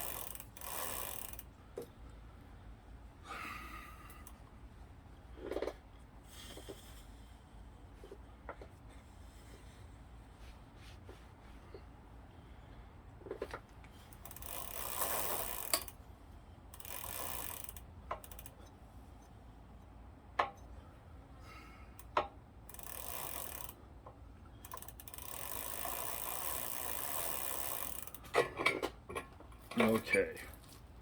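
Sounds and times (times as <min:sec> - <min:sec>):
ratchet clicking: 0:00.0 - 0:01.6, 0:13.2 - 0:16.0, 0:16.7 - 0:18.7, 0:22.0 - 0:28.4
sharp metal clicks: 0:14.1 - 0:16.0.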